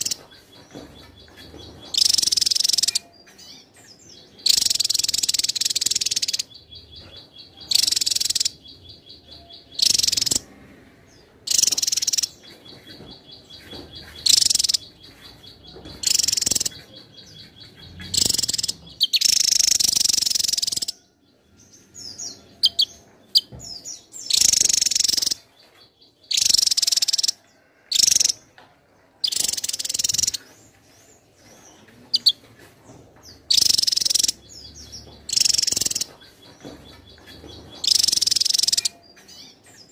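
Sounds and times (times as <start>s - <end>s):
rapid ticking bird trill: 0.0s - 3.1s, 4.4s - 10.5s, 11.5s - 12.6s, 13.6s - 21.0s, 24.2s - 25.5s, 26.3s - 28.4s, 29.2s - 30.4s, 33.5s - 39.1s
bird singing rushing phrases: 7.7s - 10.7s, 11.4s - 21.0s, 33.5s - 36.1s.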